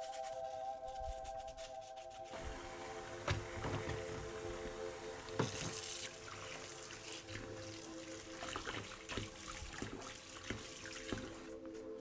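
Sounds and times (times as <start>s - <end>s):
tap water splashing over plastic: 2.4s - 12.0s.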